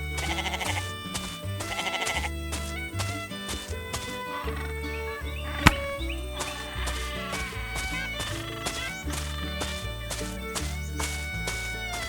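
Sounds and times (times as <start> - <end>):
upbeat cartoon music: 6.0 - 12.0.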